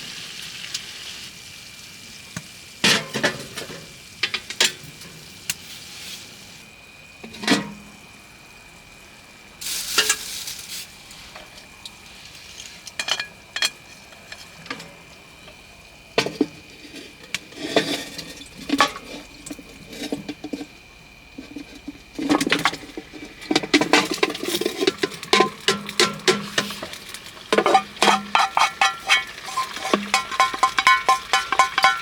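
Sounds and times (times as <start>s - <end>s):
food sizzling in a pan: 0.0s - 32.0s
utensil scraping and clinking metal: 21.4s - 32.0s.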